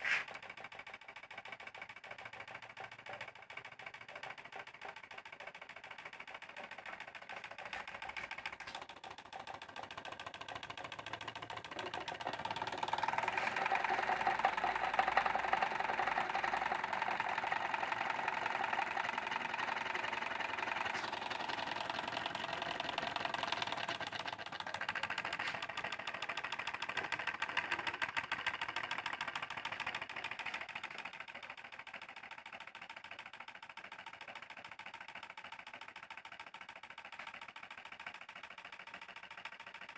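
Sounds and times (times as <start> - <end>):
stirling engine clattering: 5.8 - 31.3.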